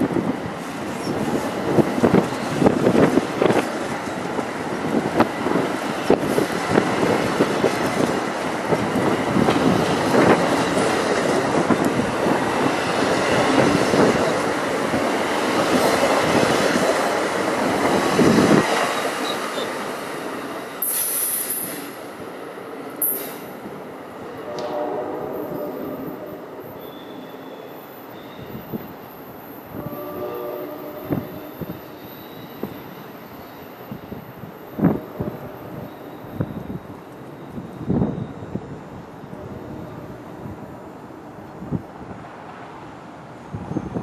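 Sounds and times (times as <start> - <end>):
train rumble: 0.0 - 44.0
high-pitched wheel squeals: 25.4 - 38.6.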